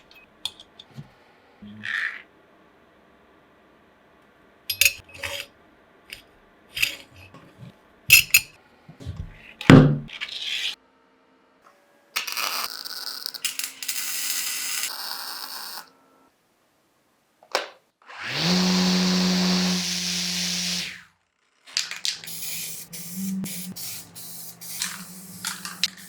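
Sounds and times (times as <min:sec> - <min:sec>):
metal tools clinking and scraping: 0:04.7 - 0:05.5, 0:06.8 - 0:07.5, 0:08.1 - 0:08.5
hissing whirring noise: 0:22.2 - 0:26.0.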